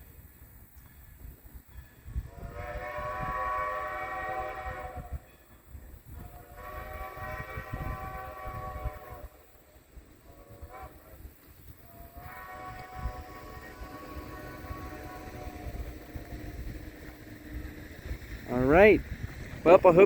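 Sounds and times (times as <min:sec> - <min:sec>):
low rumble of train: 0:00.0 - 0:20.0
steam whistle blasts: 0:02.2 - 0:05.4, 0:06.1 - 0:09.6, 0:10.2 - 0:11.2, 0:11.8 - 0:17.7.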